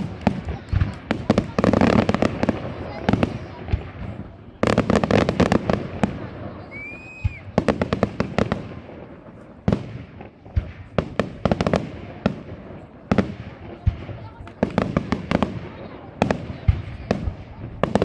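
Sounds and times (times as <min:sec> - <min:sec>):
fireworks bangs and bursts: 0:00.0 - 0:18.0
fireworks crackling: 0:00.0 - 0:18.0
firework whistling: 0:04.6 - 0:08.4.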